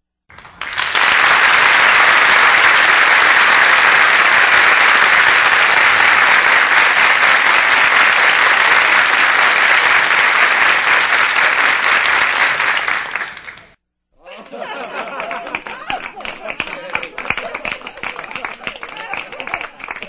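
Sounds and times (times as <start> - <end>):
crowd applauding: 0.3 - 13.8, 14.4 - 20.0.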